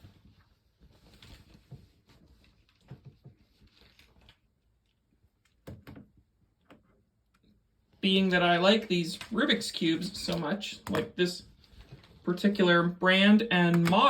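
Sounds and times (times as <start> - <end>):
faint taps and rustles: 0.0 - 7.5.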